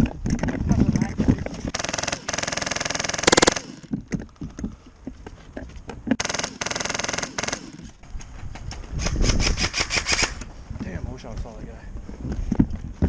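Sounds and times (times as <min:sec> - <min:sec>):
airsoft gun full-auto bursts: 0:03.3 - 0:03.6.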